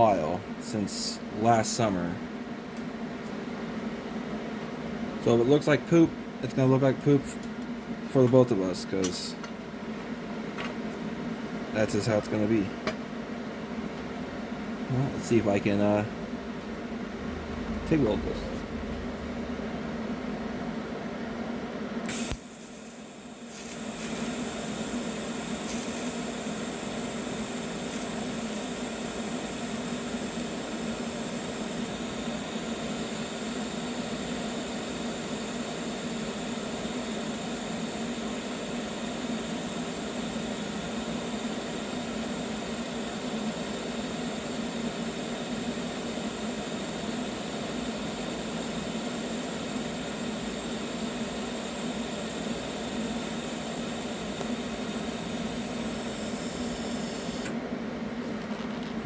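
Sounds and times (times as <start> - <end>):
welding arc buzzing hiss: 22.0 - 57.6
welder click: 22.1 - 22.6, 50.6 - 57.6.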